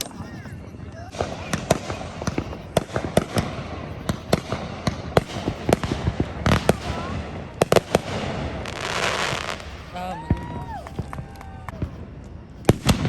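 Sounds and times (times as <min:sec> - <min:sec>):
fireworks bangs and cracks: 0:00.0 - 0:13.0.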